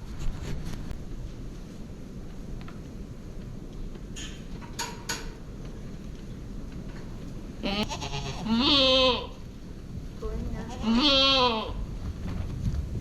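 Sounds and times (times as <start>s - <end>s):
low steady rumble: 5.4s - 13.0s
goat bleating: 7.6s - 9.4s, 10.6s - 11.8s.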